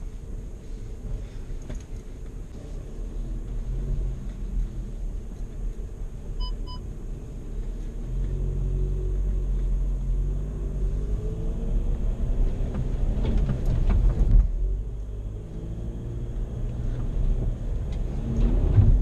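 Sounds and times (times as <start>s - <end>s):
diesel engine rumble: 0.0s - 19.0s
short beeps: 6.4s - 6.8s
truck knocks and rattles: 12.6s - 14.8s, 17.1s - 19.0s.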